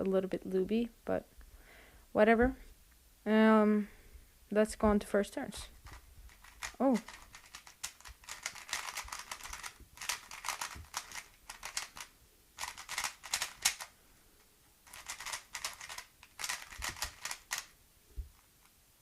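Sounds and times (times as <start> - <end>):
plastic puzzle cube clicking: 5.9 - 13.9, 14.8 - 17.8.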